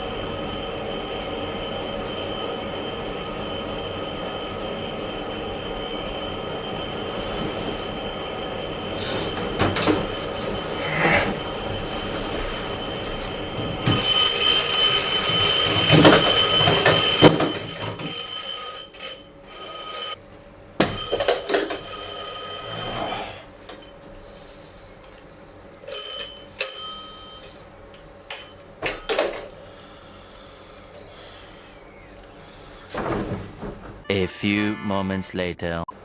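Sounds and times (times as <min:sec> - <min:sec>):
alarm clocks beeping: 0:00.0 - 0:20.2, 0:20.8 - 0:24.1, 0:25.8 - 0:30.9.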